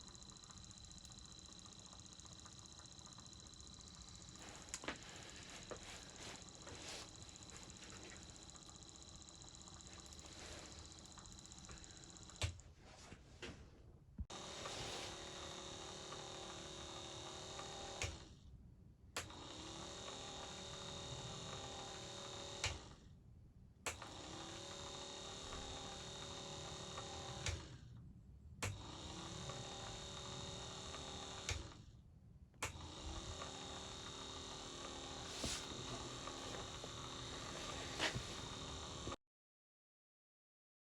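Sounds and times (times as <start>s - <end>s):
wiper motor electric hum: 0.0s - 12.8s, 28.6s - 31.9s, 32.6s - 39.2s.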